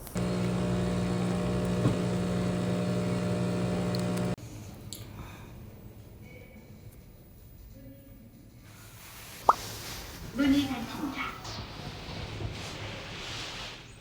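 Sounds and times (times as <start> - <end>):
steady mechanical hum: 0.0 - 7.0.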